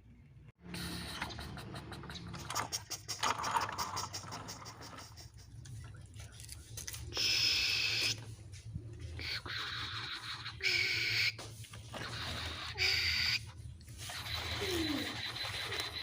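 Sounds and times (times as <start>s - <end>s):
plastic toy vehicles scraping: 1.1s - 6.8s, 13.9s - 16.0s.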